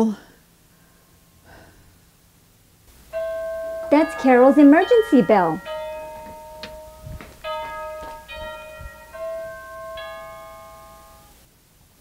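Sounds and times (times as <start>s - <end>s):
doorbell chime melody: 3.1s - 11.4s.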